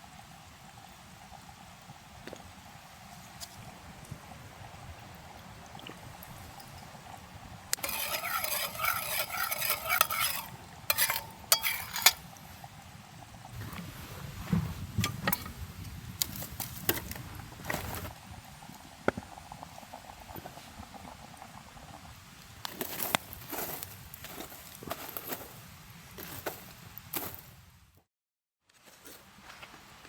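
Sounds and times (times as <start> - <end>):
utensil stirring and scraping: 6.4 - 12.4
soft rustling: 16.3 - 18.2.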